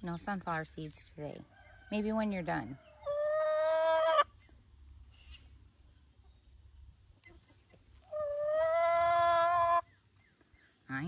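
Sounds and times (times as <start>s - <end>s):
hen complaining call: 1.9s - 4.4s, 8.1s - 9.9s.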